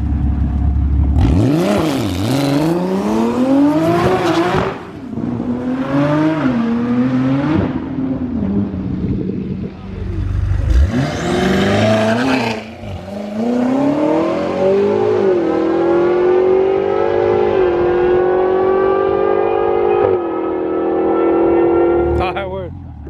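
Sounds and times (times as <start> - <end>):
car engine accelerating hard: 0.0 - 23.0.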